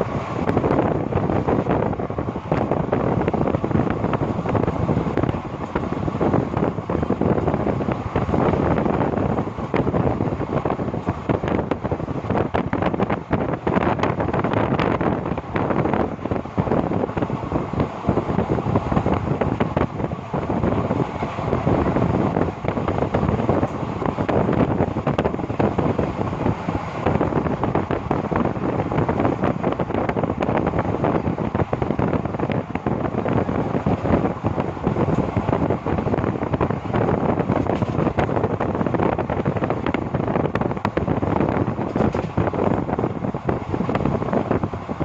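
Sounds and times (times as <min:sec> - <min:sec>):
train wheels rumbling on rails: 0:00.0 - 0:45.0
wind buffeting microphone: 0:00.0 - 0:45.0
clicks and knocks of track: 0:37.0 - 0:43.0.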